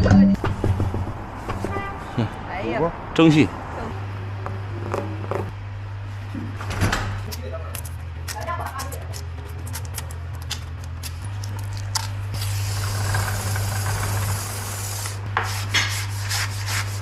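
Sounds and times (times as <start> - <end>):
low machine hum: 0.0 - 17.0
compressed air hissing: 12.4 - 15.3.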